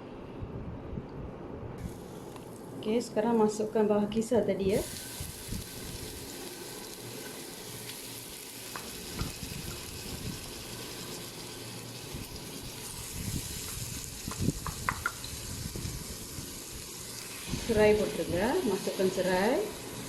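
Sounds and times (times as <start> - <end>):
spice paste sizzling in oil: 4.7 - 20.0.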